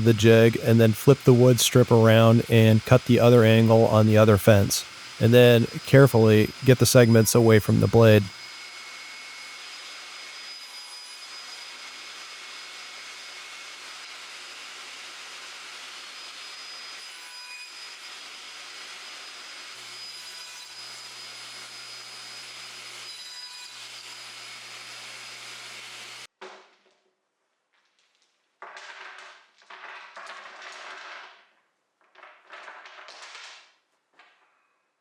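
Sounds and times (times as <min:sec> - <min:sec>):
table saw whirring: 0:00.0 - 0:26.3.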